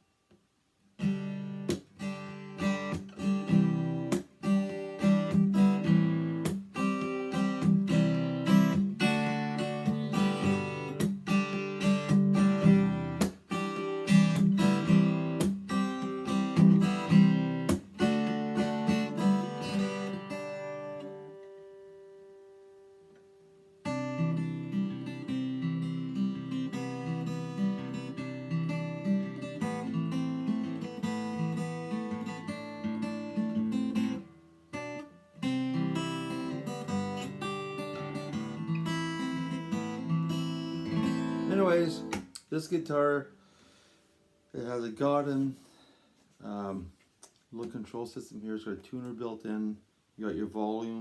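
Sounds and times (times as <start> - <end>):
acoustic guitar strummed chords: 1.0 - 43.1.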